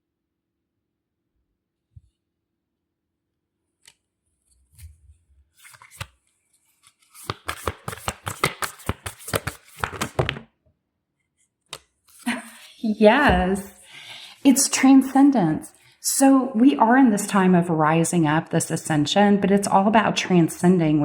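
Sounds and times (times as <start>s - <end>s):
cards shuffling: 5.6s - 10.5s.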